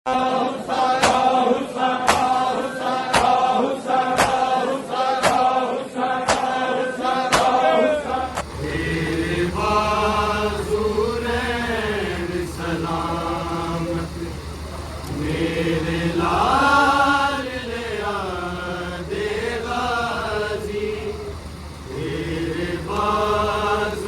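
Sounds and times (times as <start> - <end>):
men chanting together: 0.1 - 24.0
rhythmic chest slaps: 1.0 - 1.3, 2.0 - 2.4, 3.1 - 3.4, 4.2 - 4.5, 5.2 - 5.5, 6.3 - 6.5
low hum: 7.9 - 24.0.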